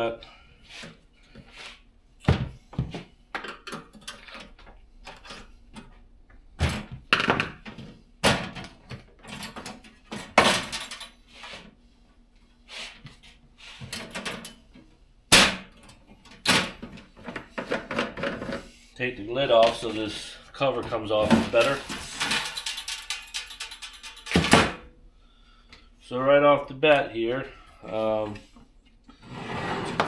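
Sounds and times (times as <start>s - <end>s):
heater casing thunks and knocks: 15.3s - 15.8s, 20.9s - 24.9s.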